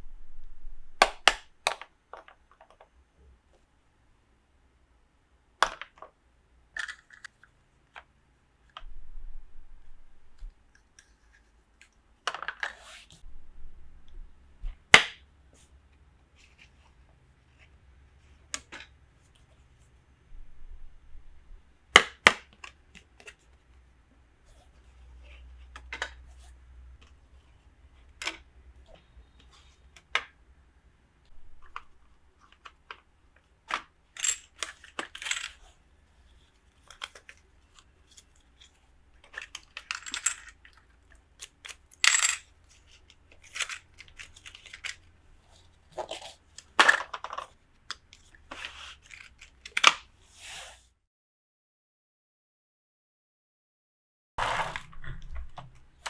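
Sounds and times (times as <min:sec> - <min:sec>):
plastic toy pieces clicking: 0:39.2 - 0:40.8.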